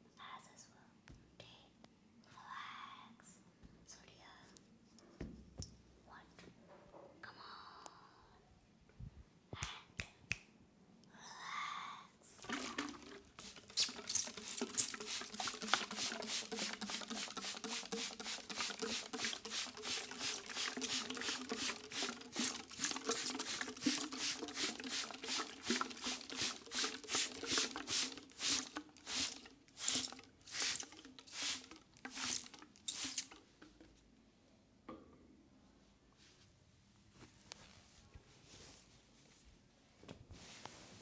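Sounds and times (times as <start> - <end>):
hands rubbing oiled skin: 12.4 - 33.4.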